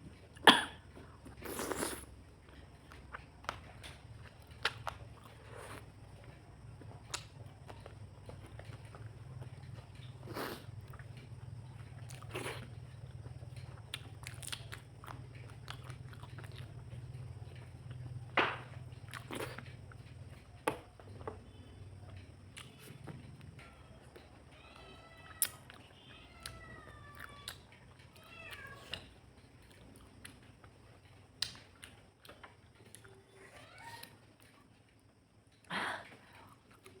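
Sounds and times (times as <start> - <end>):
person chewing food: 0.2 - 18.2, 19.0 - 21.4, 28.7 - 33.1
cat meowing faintly: 23.8 - 29.1, 33.1 - 34.2.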